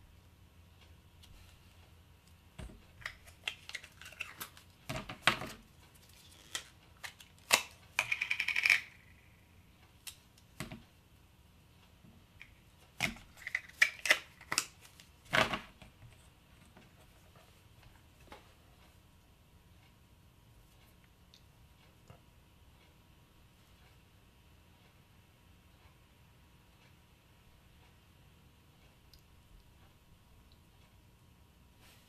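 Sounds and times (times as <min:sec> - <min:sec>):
plastic toy tools clicking: 0:06.3 - 0:09.2.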